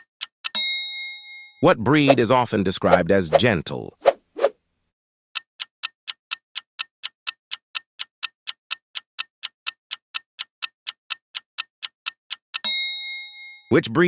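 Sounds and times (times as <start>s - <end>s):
ticking clock: 0.0s - 0.6s, 5.4s - 13.0s.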